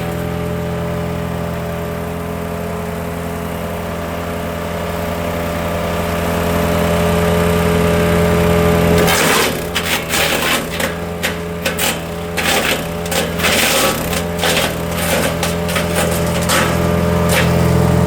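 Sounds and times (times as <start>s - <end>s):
wood chipper engine: 0.0s - 18.0s
wood cracking and snapping: 9.0s - 17.6s.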